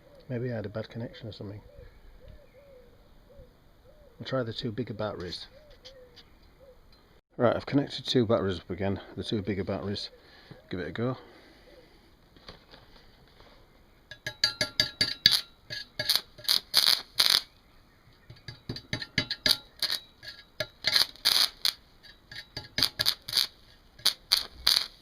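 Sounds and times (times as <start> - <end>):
welding arc crackling: 15.2 - 17.5, 19.2 - 25.0.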